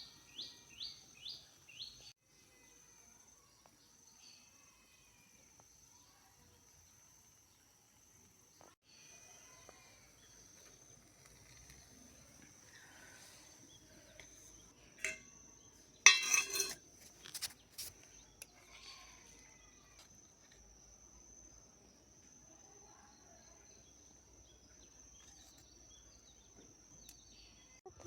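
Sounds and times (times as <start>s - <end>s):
utensils clinking on small pots: 14.1s - 17.5s.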